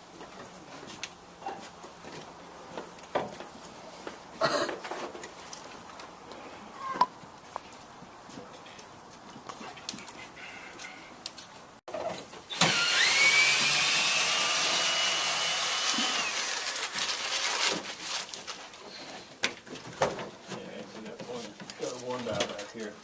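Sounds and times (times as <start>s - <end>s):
power tool motor whining: 12.5s - 17.4s.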